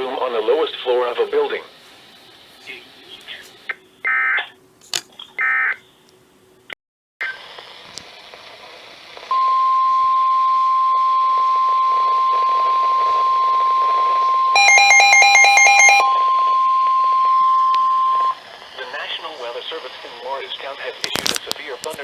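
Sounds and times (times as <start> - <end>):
steady weather alert tone: 9.3 - 20.6
rapid electronic beeping: 12.2 - 18.4.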